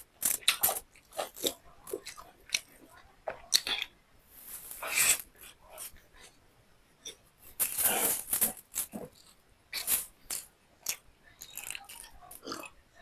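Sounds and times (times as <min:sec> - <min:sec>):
person chewing: 0:00.0 - 0:03.9, 0:04.6 - 0:06.0, 0:07.0 - 0:12.7.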